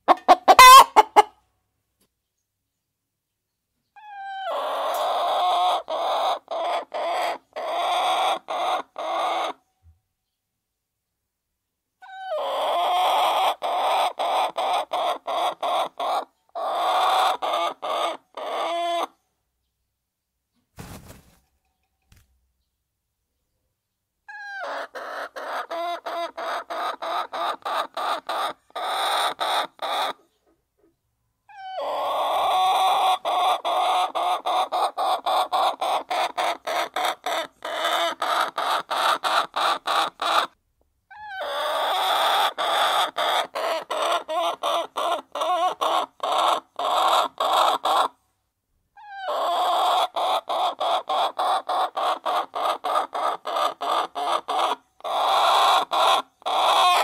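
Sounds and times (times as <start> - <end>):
hens clucking: 0.0 - 1.4, 4.1 - 9.6, 12.1 - 19.1, 24.3 - 30.9, 31.5 - 40.5, 41.2 - 48.2, 49.1 - 57.0.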